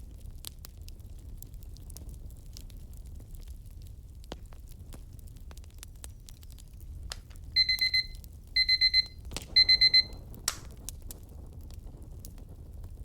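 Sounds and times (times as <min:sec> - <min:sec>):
fire crackling: 0:00.0 - 0:13.0
digital timer alarm beeping: 0:07.6 - 0:10.2.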